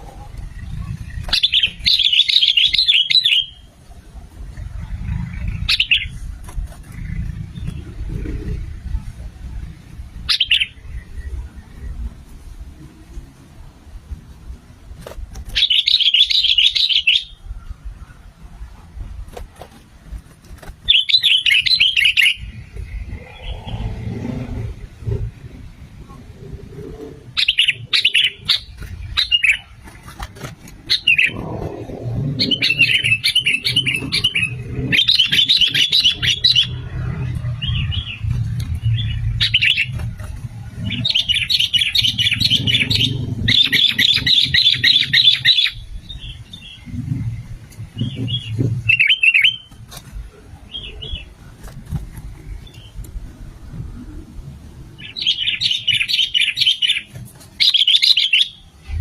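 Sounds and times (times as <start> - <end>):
steady low rumble: 0.0 - 15.6, 16.3 - 57.6
bird singing bubbly chirps: 0.5 - 3.7.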